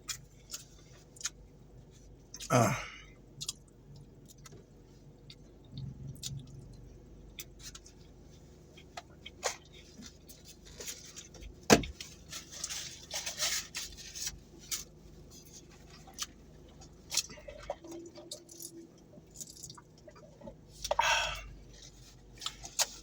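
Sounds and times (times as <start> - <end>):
chewing and mouth noises: 3.3 - 11.6, 15.8 - 23.0.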